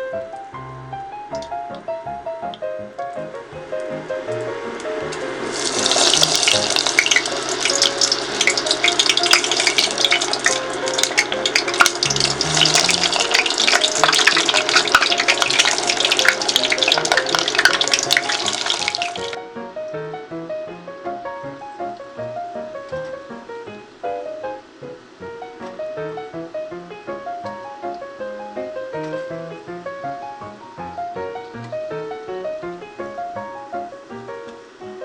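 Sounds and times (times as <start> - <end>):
background music: 0.0 - 35.0
food deep-frying in hot oil: 3.9 - 19.4.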